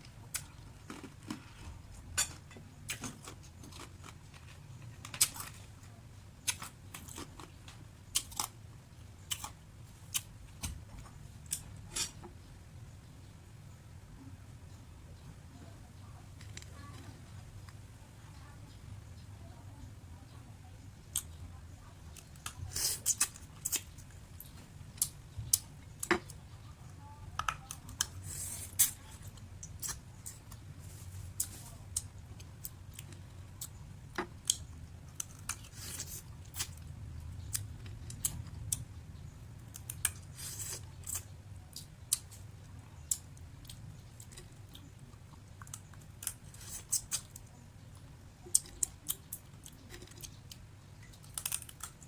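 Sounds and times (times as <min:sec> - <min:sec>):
food crunching and clicking: 0:00.0 - 0:12.2, 0:22.0 - 0:30.7, 0:31.4 - 0:52.0
steady low hum: 0:00.0 - 0:52.0.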